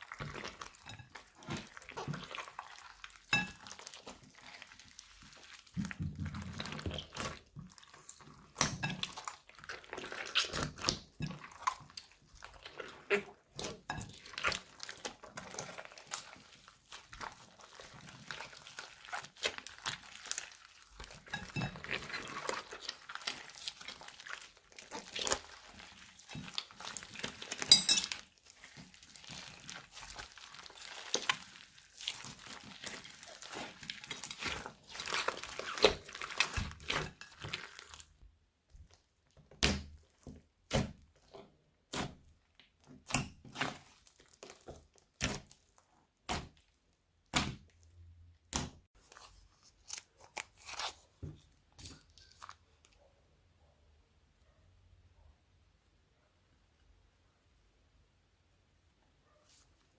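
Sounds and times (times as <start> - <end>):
slime squelching by hand: 0.0 - 53.5
plastic bags crinkling: 14.6 - 38.0.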